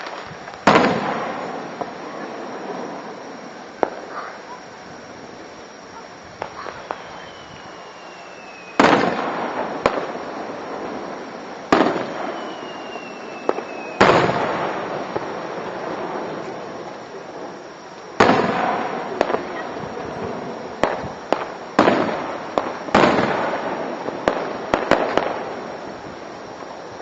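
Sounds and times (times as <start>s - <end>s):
sharp firework cracks: 0.0s - 3.0s, 3.7s - 4.6s, 6.3s - 20.0s, 20.8s - 26.8s
falling firework whistle: 0.0s - 27.0s
fireworks booming: 0.0s - 27.0s.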